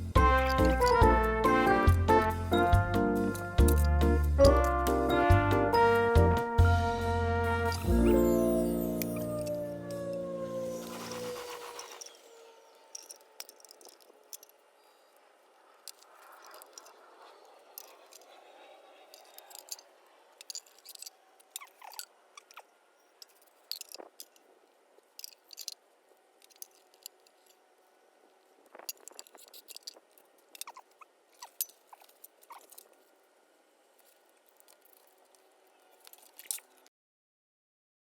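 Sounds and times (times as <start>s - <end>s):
small hard objects clicking: 12.9s - 14.6s, 19.2s - 24.5s, 25.1s - 25.8s, 34.0s - 36.9s.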